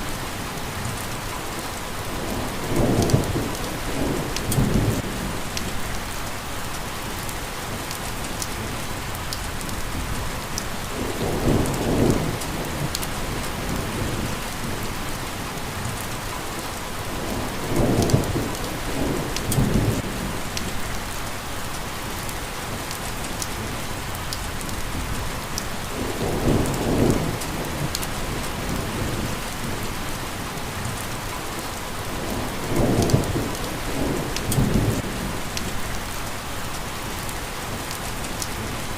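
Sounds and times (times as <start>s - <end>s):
thunder rumbling: 2.1s - 6.0s, 10.8s - 15.1s, 17.0s - 21.0s, 25.8s - 31.0s, 32.0s - 36.1s
heavy rain hissing: 10.2s - 38.9s.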